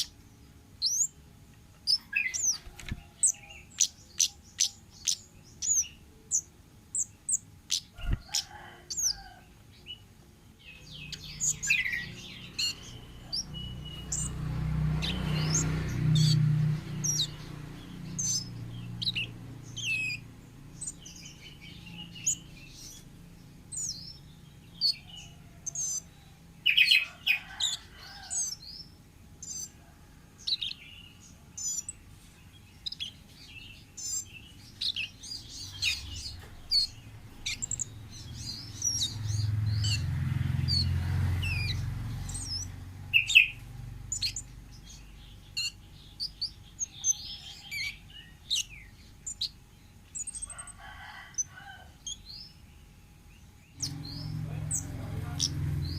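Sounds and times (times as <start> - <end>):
bird chirping and whistling: 0.8 - 1.1, 1.9 - 5.9, 11.0 - 14.3, 17.0 - 17.4, 18.2 - 20.2, 34.0 - 37.9, 40.7 - 43.5.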